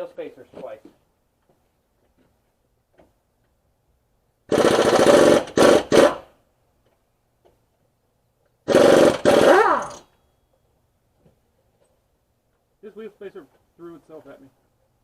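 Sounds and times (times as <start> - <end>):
impact wrench hammering: 4.5 - 6.2, 8.7 - 10.1.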